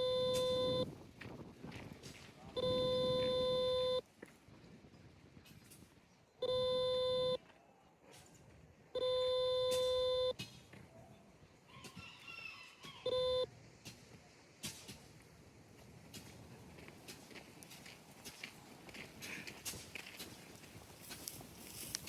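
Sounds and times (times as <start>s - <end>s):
electronic tones: 0.0s - 0.9s, 2.6s - 4.0s, 6.4s - 7.4s, 9.0s - 10.3s, 13.1s - 13.4s.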